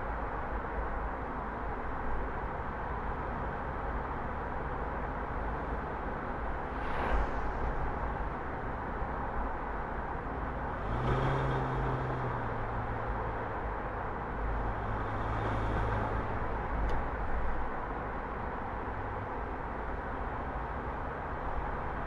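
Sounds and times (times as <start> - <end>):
car engine hum: 0.0 - 22.0.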